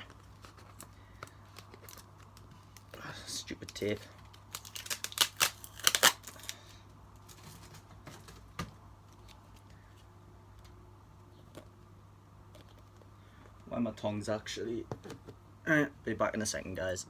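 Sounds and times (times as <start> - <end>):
plastic packaging crackling: 0.0 - 9.7.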